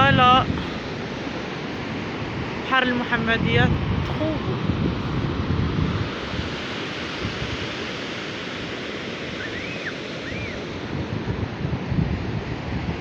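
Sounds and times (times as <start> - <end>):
surf breaking ashore: 0.0 - 13.0
short high calls: 9.4 - 10.6.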